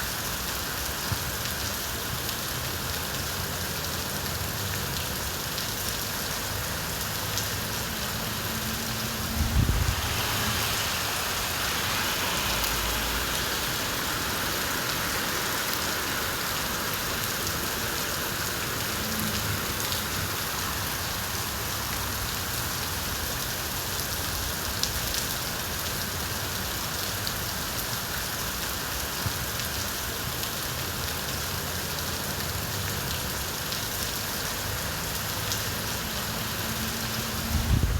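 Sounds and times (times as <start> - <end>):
steady rain falling: 0.0 - 37.9.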